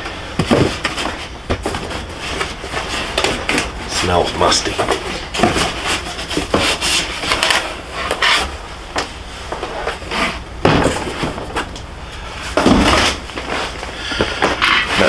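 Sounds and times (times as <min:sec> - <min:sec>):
cardboard packaging rustling: 0:00.4 - 0:08.6
heavy bump: 0:10.4 - 0:15.0.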